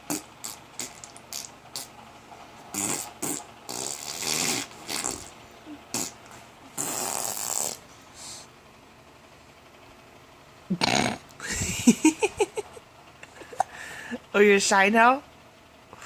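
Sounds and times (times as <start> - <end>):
baby making raspy mouth noises: 0.0 - 1.9, 2.7 - 7.8.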